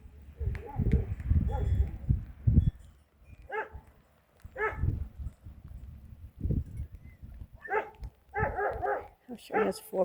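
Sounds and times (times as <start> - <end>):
dog barking: 3.5 - 3.8, 4.6 - 4.9, 7.6 - 9.9.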